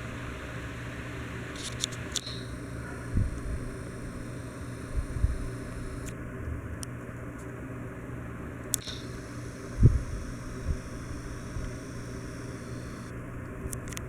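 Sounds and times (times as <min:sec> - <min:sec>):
ceiling fan humming: 0:00.0 - 0:14.0
faint ticks: 0:03.2 - 0:06.2, 0:08.7 - 0:13.1.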